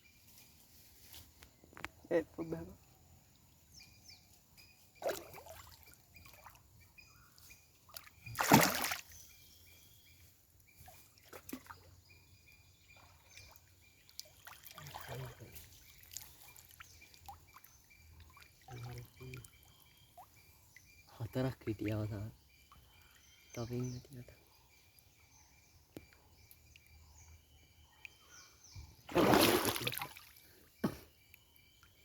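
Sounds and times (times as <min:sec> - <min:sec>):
bird chirps: 0:03.6 - 0:14.2, 0:15.1 - 0:29.1
river water splashing: 0:05.0 - 0:06.7, 0:07.9 - 0:09.2, 0:12.9 - 0:19.5, 0:29.1 - 0:30.4.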